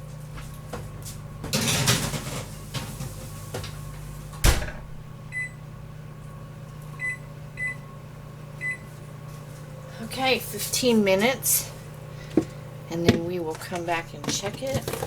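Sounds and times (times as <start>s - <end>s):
baking sheet rattling and scraping: 1.5s - 3.3s, 13.2s - 15.0s
oven door shutting: 1.5s - 5.1s.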